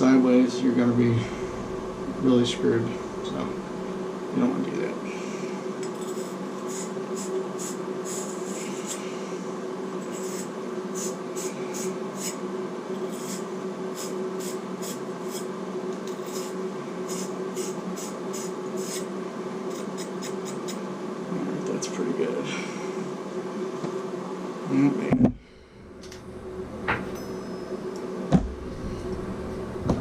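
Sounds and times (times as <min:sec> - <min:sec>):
steady background hum: 0:00.0 - 0:30.0.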